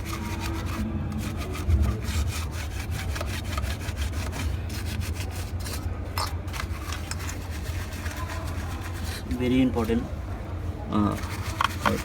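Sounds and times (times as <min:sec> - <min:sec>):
rapid scrubbing strokes: 0:00.0 - 0:05.9, 0:06.5 - 0:09.7, 0:11.0 - 0:12.0
low steady hum: 0:00.0 - 0:12.0.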